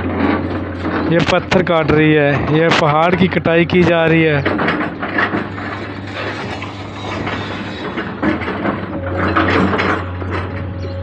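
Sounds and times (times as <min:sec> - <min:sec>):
excavator diesel engine drone: 0:00.0 - 0:11.0
hydraulic breaker hammering stone: 0:04.3 - 0:10.6.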